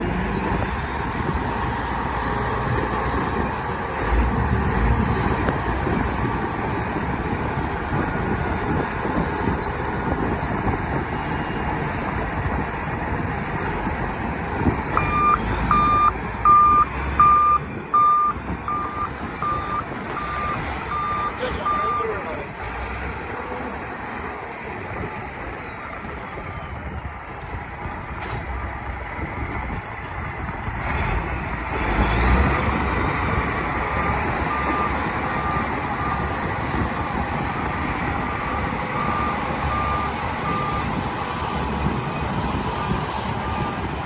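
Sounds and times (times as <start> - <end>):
bulldozer diesel engine running: 0.0 - 44.0
reversing alarm beeping: 14.9 - 25.6, 33.0 - 44.0.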